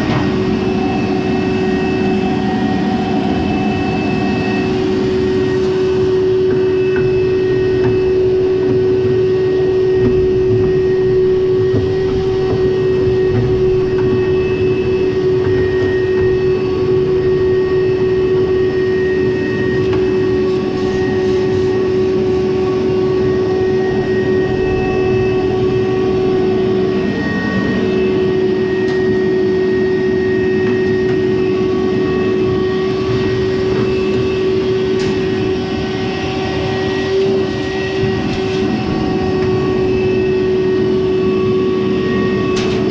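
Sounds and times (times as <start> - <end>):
clothes dryer humming and rumbling: 0.0 - 42.9.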